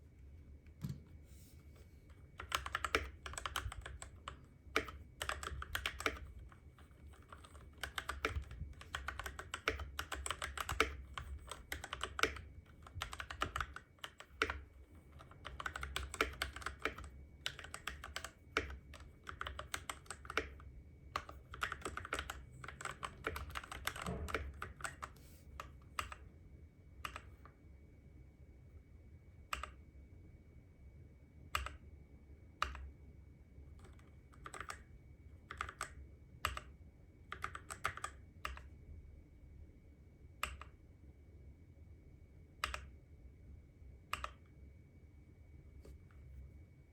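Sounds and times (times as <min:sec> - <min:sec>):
mechanical keyboard typing: 0:02.4 - 0:26.2, 0:31.5 - 0:31.8, 0:33.8 - 0:36.7, 0:37.3 - 0:38.7.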